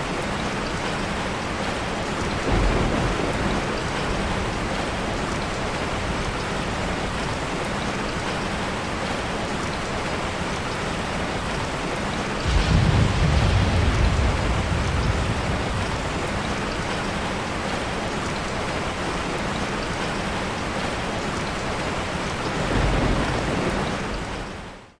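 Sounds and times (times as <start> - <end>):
heavy rain: 0.0 - 25.0
thunder rumbling: 2.4 - 6.4, 12.4 - 17.4, 22.6 - 24.5.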